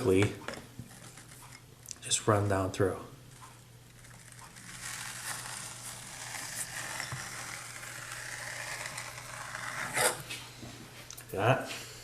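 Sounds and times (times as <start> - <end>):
blades scraping through composition: 4.1 - 10.2.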